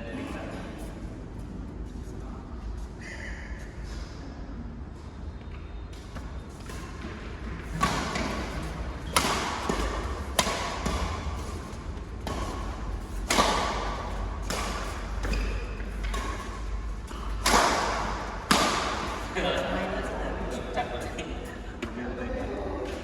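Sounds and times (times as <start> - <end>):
racket striking shuttlecock: 7.7 - 19.3.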